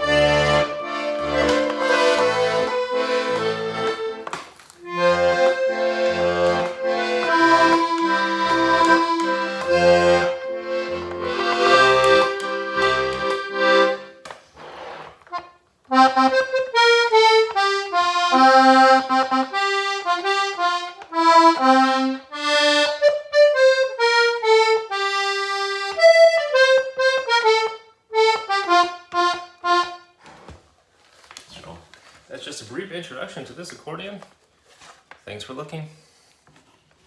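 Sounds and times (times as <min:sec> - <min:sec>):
accordion bass notes: 0:00.0 - 0:30.2
button accordion melody: 0:00.0 - 0:30.2.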